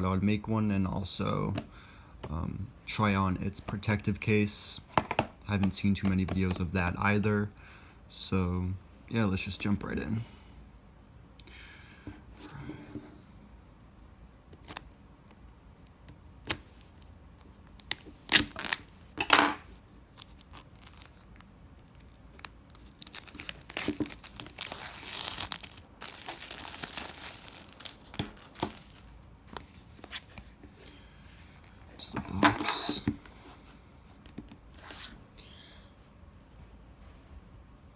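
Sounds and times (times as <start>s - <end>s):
packaging tearing and crinkling: 17.8s - 19.0s, 20.1s - 30.2s.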